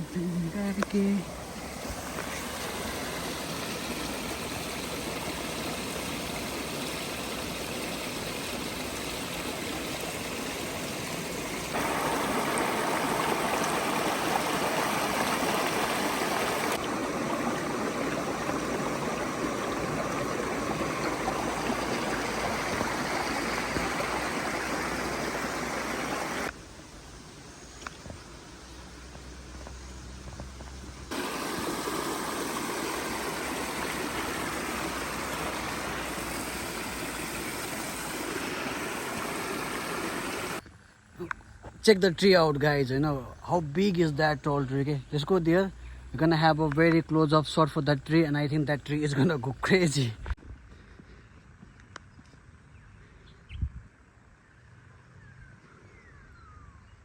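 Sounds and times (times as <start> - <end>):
creek water rushing: 0.0 - 26.8, 31.1 - 40.6.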